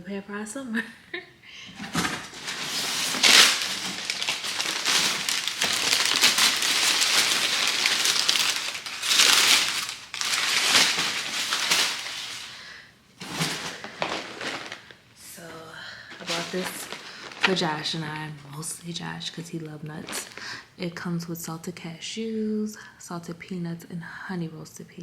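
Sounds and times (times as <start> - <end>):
packaging crinkling: 1.8 - 20.7.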